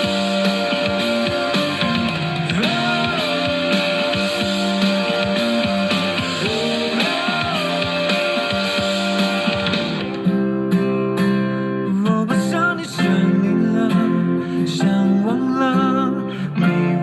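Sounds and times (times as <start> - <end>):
person singing: 0.0 - 10.2, 11.9 - 17.0
pop song through speaker: 0.0 - 10.4, 11.8 - 17.0
strummed acoustic guitar: 0.0 - 17.0.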